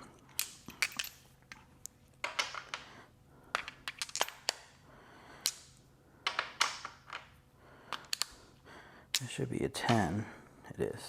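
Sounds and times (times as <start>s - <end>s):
metal tools clacking together: 0.4s - 1.6s.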